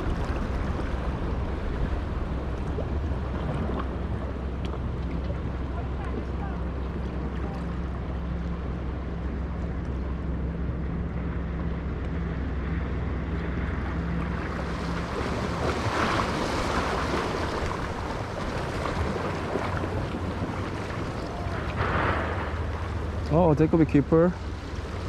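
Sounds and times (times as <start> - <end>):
low motor hum: 0.0 - 25.0
surf washing over rocks: 14.1 - 25.0.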